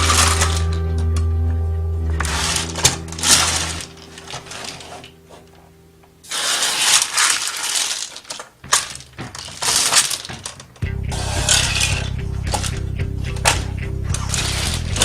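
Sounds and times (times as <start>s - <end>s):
dried beans rattling and spilling: 6.3s - 10.8s.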